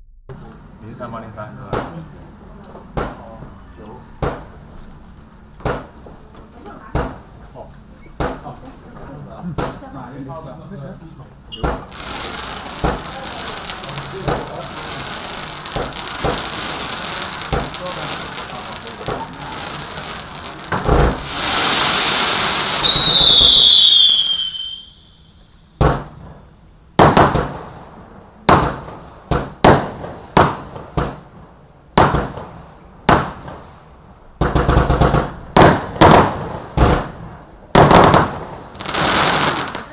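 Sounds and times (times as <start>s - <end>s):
firework bangs: 0.3s - 2.2s, 2.9s - 4.8s, 5.6s - 6.1s, 6.8s - 7.4s, 8.2s - 8.7s, 9.4s - 10.4s, 11.5s - 39.9s
firework hissing and whistling: 11.5s - 27.9s, 28.5s - 39.9s.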